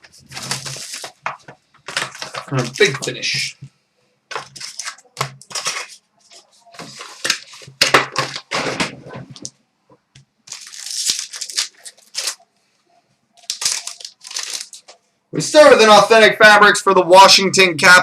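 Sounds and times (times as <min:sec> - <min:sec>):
packaging tearing and crinkling: 0:00.2 - 0:01.3, 0:04.3 - 0:06.0, 0:10.5 - 0:12.4, 0:13.4 - 0:15.0.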